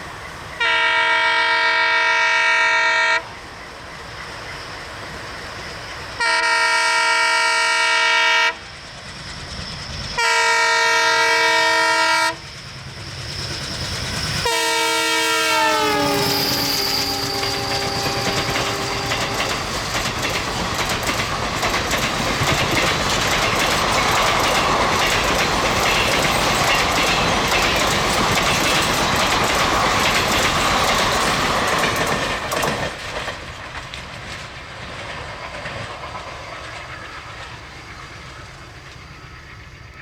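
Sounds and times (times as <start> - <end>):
low rumble of train: 0.0 - 40.0
locomotive horn: 0.6 - 3.3, 6.2 - 8.6, 10.2 - 12.4, 14.4 - 19.6
train wheels clattering over rail joints: 15.8 - 40.0.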